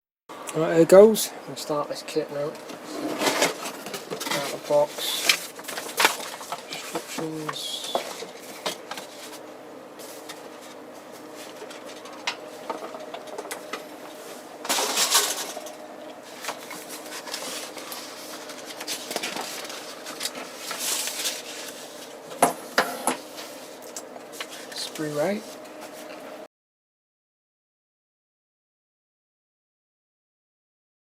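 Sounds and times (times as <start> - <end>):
faint steady hum: 0.3 - 26.5
packaging rustling: 3.2 - 9.4, 16.5 - 22.2.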